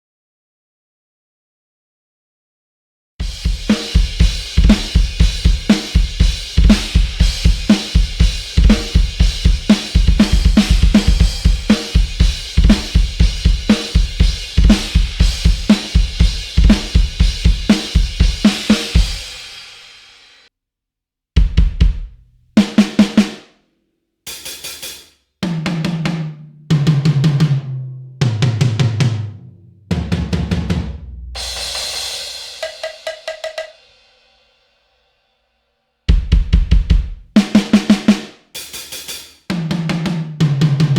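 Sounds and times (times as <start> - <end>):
tom drum runs: 3.2 - 19.3, 29.9 - 33.8
drum kit groove: 3.2 - 20.5, 21.4 - 23.5, 24.3 - 34.5, 36.1 - 40.9.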